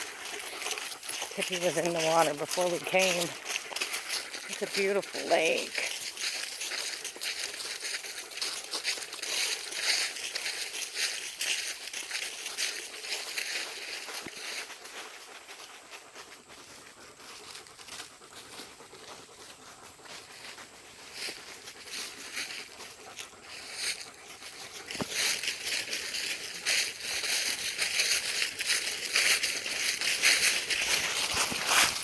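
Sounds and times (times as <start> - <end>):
footsteps through leaf litter: 0.0 - 15.1, 19.9 - 32.0.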